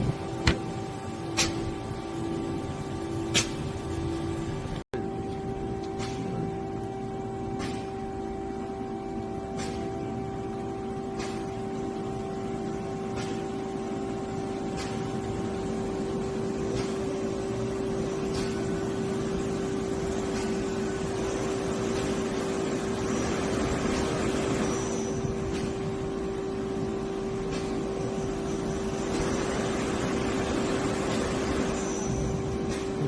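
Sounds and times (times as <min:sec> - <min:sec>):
machine hiss: 0:13.1 - 0:33.0.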